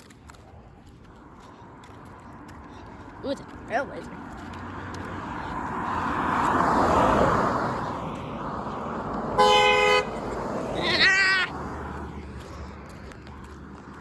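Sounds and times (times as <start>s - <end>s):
car passing: 0.1s - 14.0s
car horn honk: 9.4s - 10.2s.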